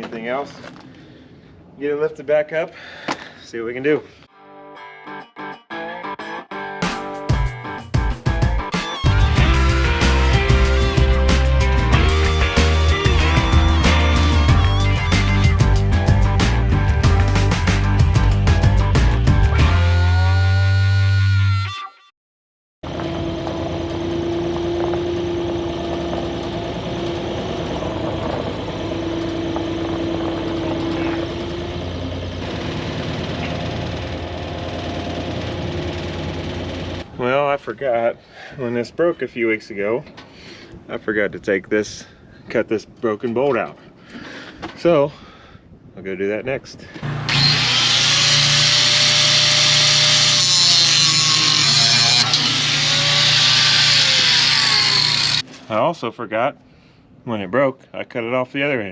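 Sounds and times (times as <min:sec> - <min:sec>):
skid loader engine running: 0:09.1 - 0:19.5, 0:22.9 - 0:37.0, 0:47.0 - 0:55.4
power tool cutting steel bolt: 0:47.0 - 0:55.4.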